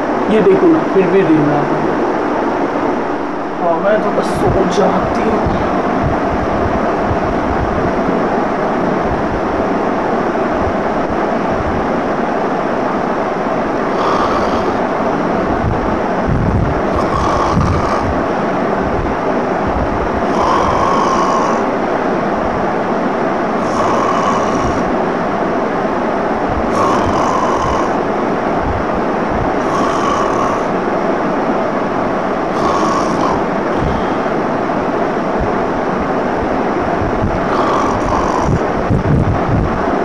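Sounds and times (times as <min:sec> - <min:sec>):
background rumble and hiss: 0:00.0 - 0:40.0
person snoring: 0:13.8 - 0:15.1, 0:16.8 - 0:18.3, 0:20.2 - 0:21.7, 0:23.6 - 0:25.0, 0:26.7 - 0:28.1, 0:29.5 - 0:30.8, 0:32.5 - 0:34.4, 0:37.4 - 0:39.2.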